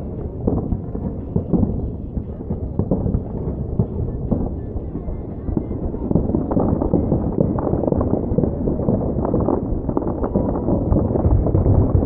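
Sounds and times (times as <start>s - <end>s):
fireworks booming and crackling: 0.0s - 12.0s.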